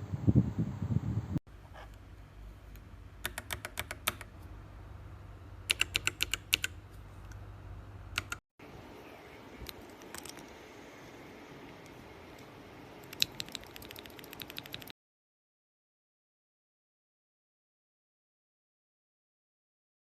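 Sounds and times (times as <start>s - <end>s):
mechanical keyboard clacking: 5.7s - 6.8s, 13.0s - 14.9s.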